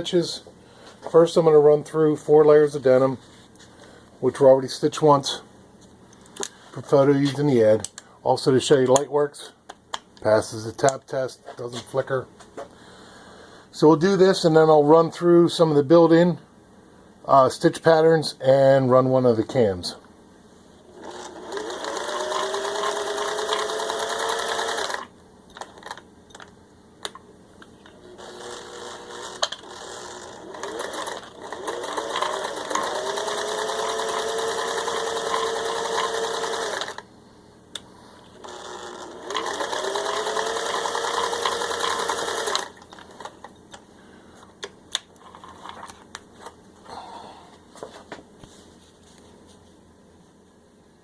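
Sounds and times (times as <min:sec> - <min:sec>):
sewing machine motor whine: 0:20.9 - 0:25.1, 0:28.0 - 0:37.0, 0:38.4 - 0:43.3.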